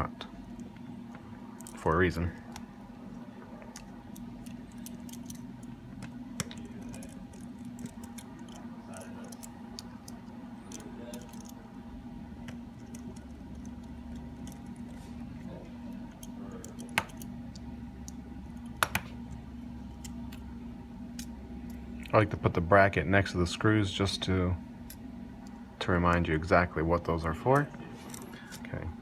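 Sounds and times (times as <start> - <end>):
steady electrical hum: 0.0 - 29.0
screwdriver clicks and taps: 16.1 - 19.1.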